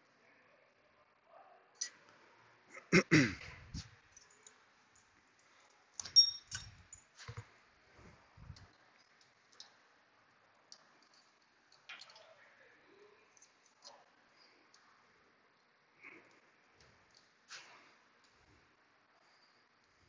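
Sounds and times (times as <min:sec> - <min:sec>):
metal tools clicking and knocking: 0:06.0 - 0:07.1.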